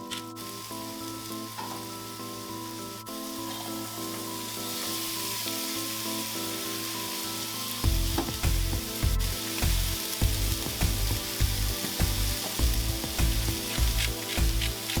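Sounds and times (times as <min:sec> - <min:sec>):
food sizzling on a griddle: 0:00.0 - 0:15.0
background music with bass beat: 0:07.8 - 0:15.0.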